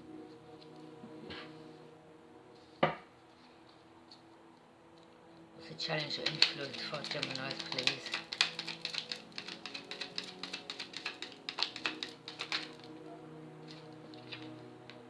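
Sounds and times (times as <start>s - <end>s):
soft background music: 0.0s - 15.0s
cards being shuffled: 6.0s - 13.0s, 13.7s - 15.0s.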